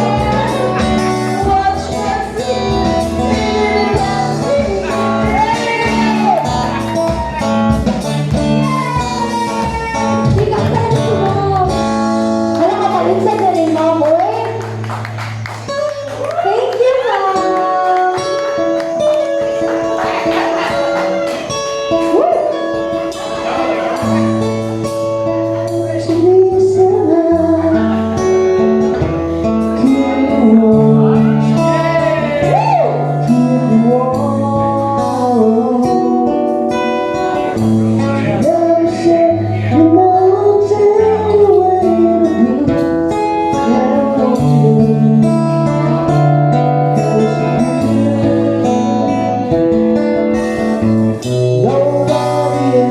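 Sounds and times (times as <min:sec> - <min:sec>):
person singing long notes: 0:00.0 - 0:07.8, 0:29.6 - 0:49.6, 0:51.2 - 0:52.9
bass line: 0:00.0 - 0:52.9
guitar chords: 0:00.0 - 0:52.9.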